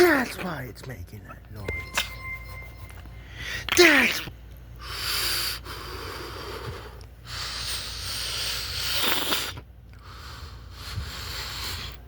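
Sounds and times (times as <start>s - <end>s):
hissing snort-like breaths: 4.8s - 12.0s.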